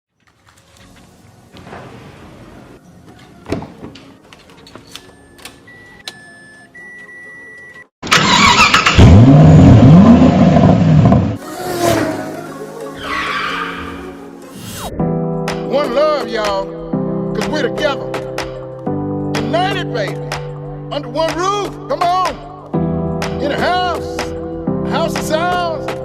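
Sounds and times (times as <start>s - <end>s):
car engine starting and revving: 8.0s - 12.8s.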